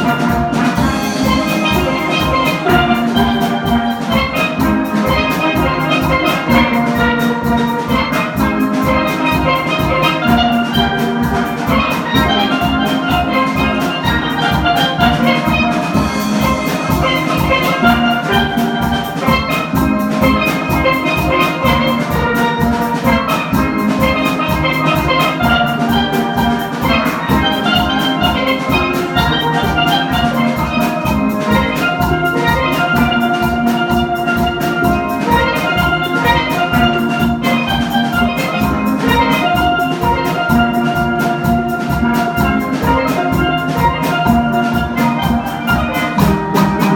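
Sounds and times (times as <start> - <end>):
steady drum beat: 0.0 - 46.9
steelpans playing melody: 0.0 - 46.9.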